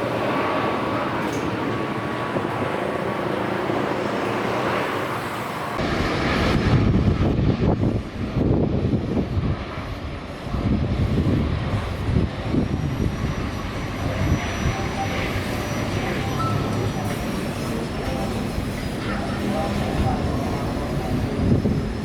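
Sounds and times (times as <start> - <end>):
jet engine rumble: 0.0 - 22.0
faint high whine: 12.6 - 22.0.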